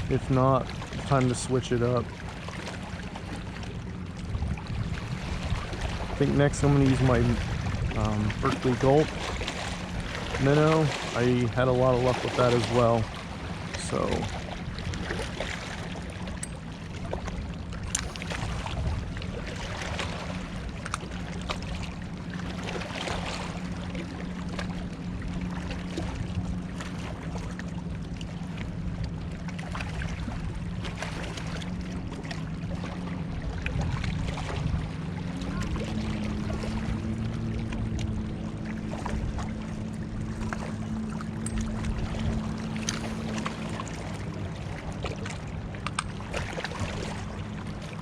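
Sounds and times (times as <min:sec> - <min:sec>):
steady motor hum: 0:00.0 - 0:48.0.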